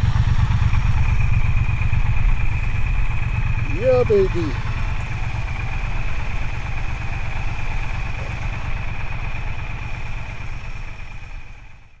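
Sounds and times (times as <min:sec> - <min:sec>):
motorcycle engine running: 0:00.0 - 0:12.0.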